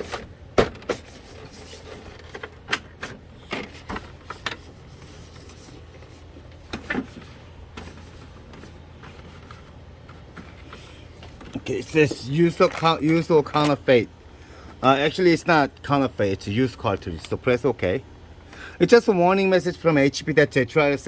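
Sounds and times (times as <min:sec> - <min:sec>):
rubbing and scraping plastic: 0:00.0 - 0:13.7
low steady hum: 0:00.0 - 0:21.0.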